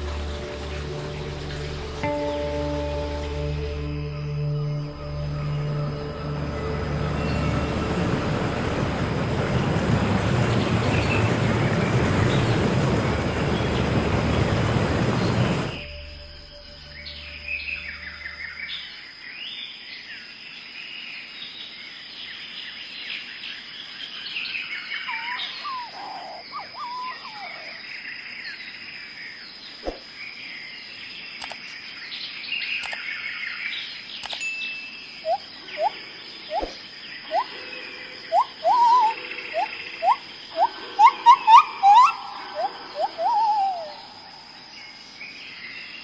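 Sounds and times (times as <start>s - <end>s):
birds chirping and trilling: 0.0s - 46.0s
steady high tone: 1.8s - 9.4s.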